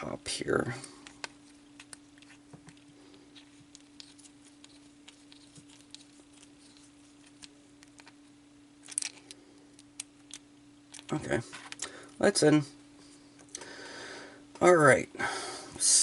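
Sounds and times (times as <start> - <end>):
low electrical hum: 0.0 - 16.0.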